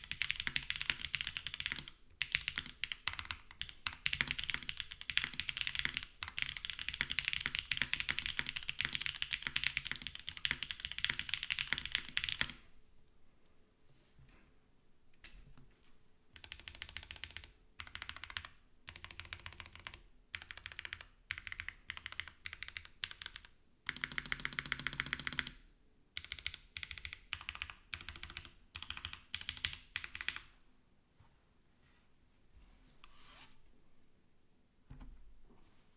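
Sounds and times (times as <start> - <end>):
mechanical keyboard typing: 0.0 - 12.6, 16.4 - 25.6, 26.2 - 30.5.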